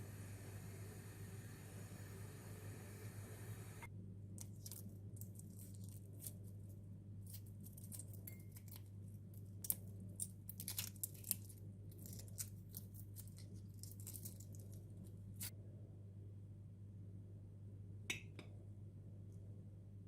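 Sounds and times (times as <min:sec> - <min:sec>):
steady low hum: 0:00.0 - 0:10.5.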